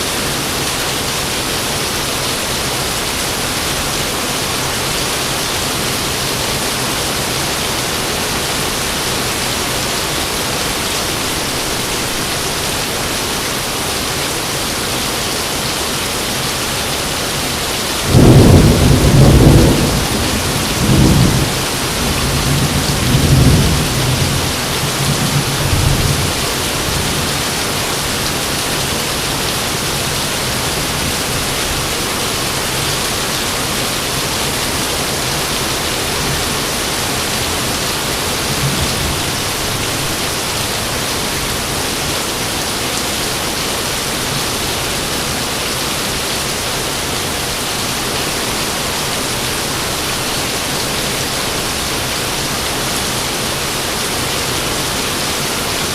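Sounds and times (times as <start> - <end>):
rain hissing: 0.0 - 55.9
thunder clap rumbling: 18.1 - 27.1, 38.3 - 41.1.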